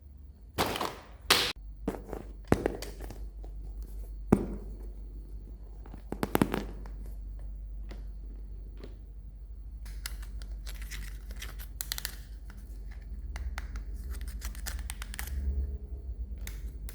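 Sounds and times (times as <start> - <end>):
plastic packaging crinkling: 0.6 - 1.5.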